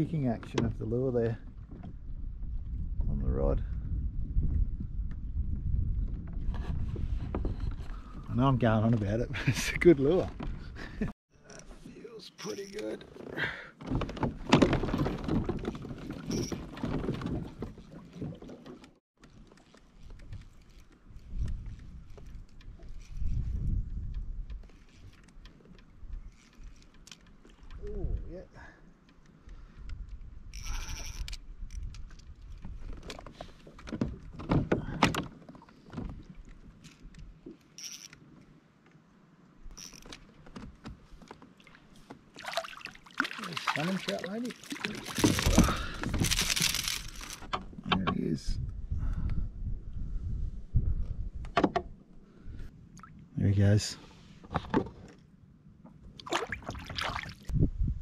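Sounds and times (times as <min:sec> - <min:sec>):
water sloshing: 0:12.4 - 0:23.4, 0:39.7 - 0:47.8, 0:55.9 - 0:57.5
knocks and clicks of fishing gear: 0:12.8 - 0:23.4, 0:29.0 - 0:38.3, 0:44.6 - 0:48.2, 0:51.4 - 0:51.9.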